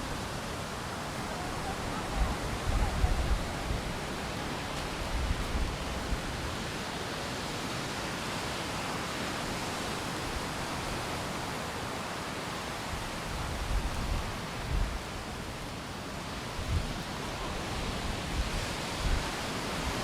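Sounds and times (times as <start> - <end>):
rain: 0.0 - 20.0
strong wind: 0.0 - 20.0
wind buffeting microphone: 0.1 - 6.7, 13.0 - 15.7, 16.4 - 20.0.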